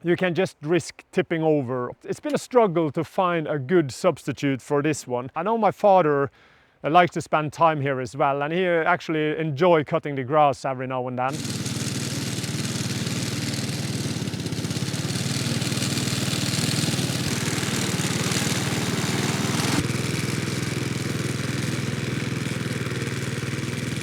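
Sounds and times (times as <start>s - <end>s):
lawn mower engine running: 11.3s - 24.0s.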